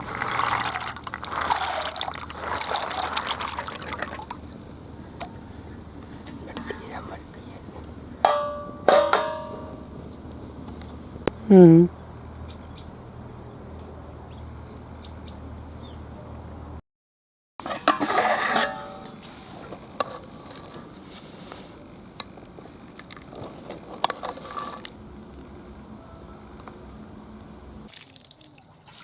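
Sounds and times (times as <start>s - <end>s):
low steady hum: 0.0s - 16.2s
metal pots and utensils clattering: 8.2s - 10.0s, 17.6s - 19.3s.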